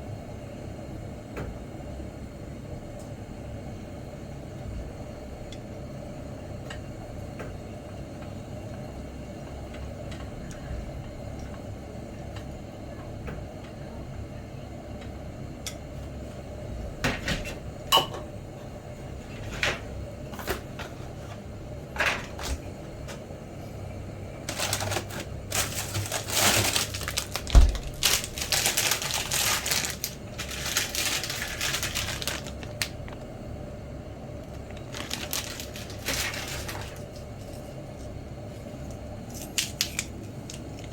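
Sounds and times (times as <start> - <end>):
steady low hum: 0.0 - 40.9
small hard objects clattering: 24.5 - 33.2, 34.7 - 37.6.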